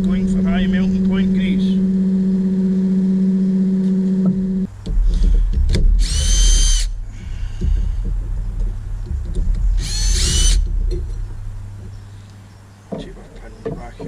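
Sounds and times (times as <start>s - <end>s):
electric motor whine: 0.0s - 4.7s, 6.0s - 7.0s, 9.7s - 10.7s
knocking and handling noise: 4.2s - 6.1s, 7.2s - 12.0s, 12.9s - 14.0s.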